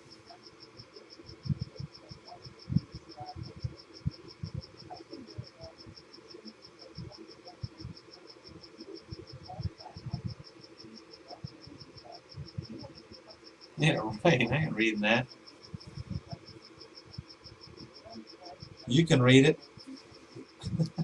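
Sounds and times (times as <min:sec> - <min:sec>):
cricket chirping: 0:00.0 - 0:21.0.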